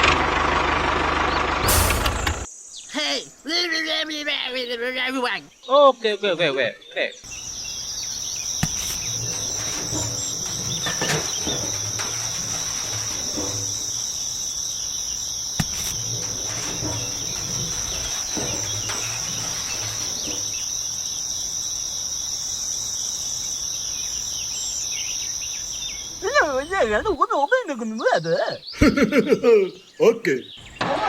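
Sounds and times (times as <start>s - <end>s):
insects chirring: 1.8s - 31.0s
faint knocks: 8.5s - 14.3s, 15.6s - 20.7s.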